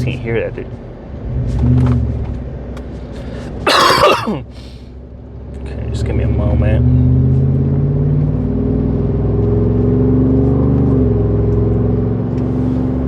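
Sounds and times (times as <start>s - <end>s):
exhaust drone from inside cab: 2.3s - 5.3s.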